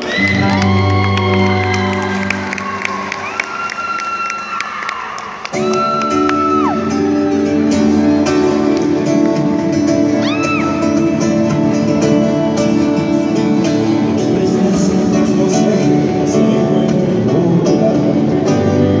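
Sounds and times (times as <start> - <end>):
electric guitar: 0.0 - 3.3, 5.4 - 19.0
live band playing: 5.6 - 19.0.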